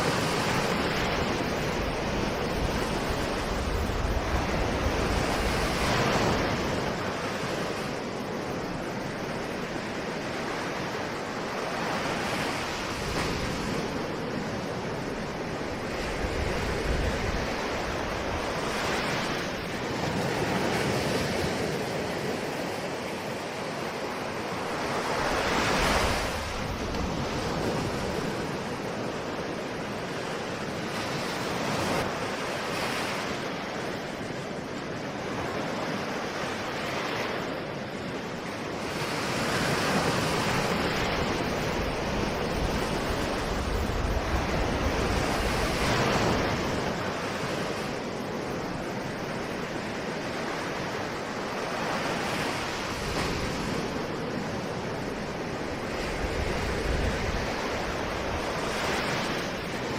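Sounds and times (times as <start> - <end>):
ocean waves breaking on shore: 0.0 - 59.9
wind noise on microphone: 0.0 - 59.9.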